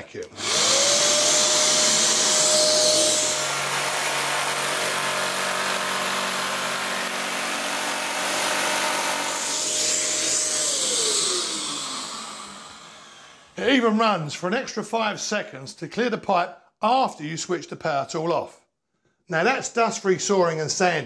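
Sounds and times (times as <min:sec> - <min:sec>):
power tool cutting wood: 0:00.3 - 0:13.6
wet and dry vacuum running: 0:00.3 - 0:13.6.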